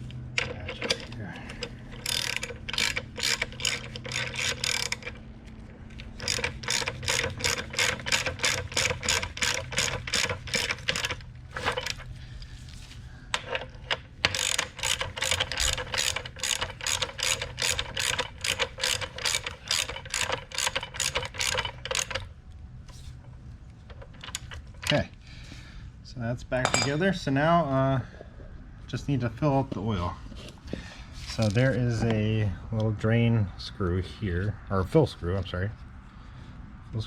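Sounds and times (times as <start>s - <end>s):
ratchet wrench clicking: 0.4s - 5.2s, 6.0s - 12.0s, 13.4s - 22.3s.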